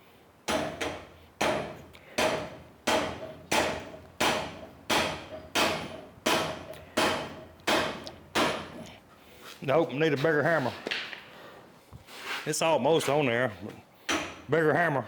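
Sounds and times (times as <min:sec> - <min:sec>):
rubber hammer striking pipe: 0:00.5 - 0:08.9, 0:14.1 - 0:14.5.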